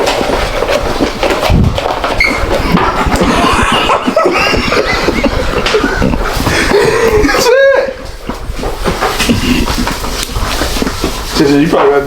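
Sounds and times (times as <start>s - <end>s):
people laughing: 2.5s - 8.0s.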